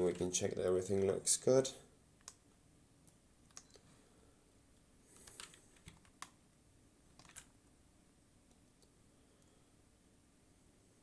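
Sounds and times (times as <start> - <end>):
computer keyboard and mouse clicks: 2.2 - 2.4, 3.0 - 3.8, 5.2 - 6.4, 7.1 - 7.5.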